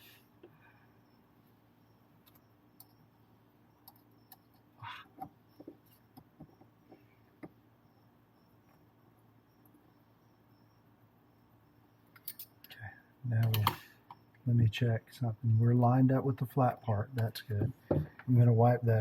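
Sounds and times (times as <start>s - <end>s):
low steady hum: 0.0s - 19.0s
small parts clicking and tapping: 2.2s - 3.0s, 3.8s - 7.6s, 12.1s - 12.8s, 13.4s - 14.2s.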